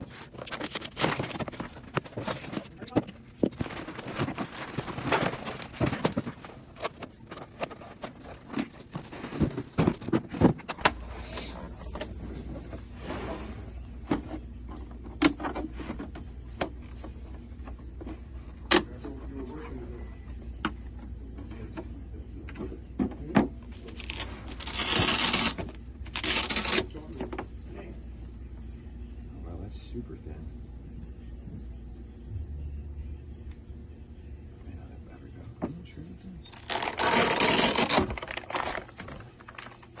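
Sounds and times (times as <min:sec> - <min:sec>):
packaging rustling: 0:00.0 - 0:10.4, 0:36.5 - 0:40.0
steady low hum: 0:00.0 - 0:40.0.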